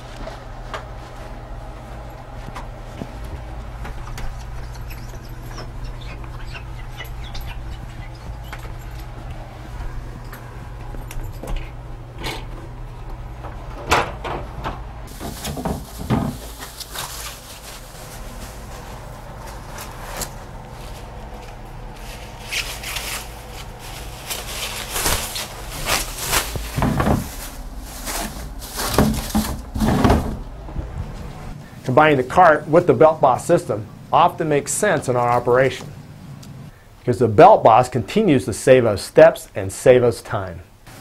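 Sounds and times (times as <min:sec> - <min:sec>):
low hum: 0:00.0 - 0:32.0
handling knocks and clicks: 0:02.4 - 0:16.9.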